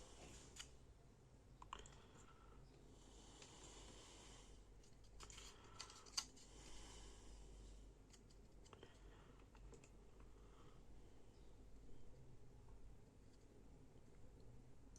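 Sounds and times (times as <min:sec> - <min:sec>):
faint small clicks and handling: 0:00.2 - 0:00.8, 0:04.8 - 0:06.5, 0:08.0 - 0:10.3.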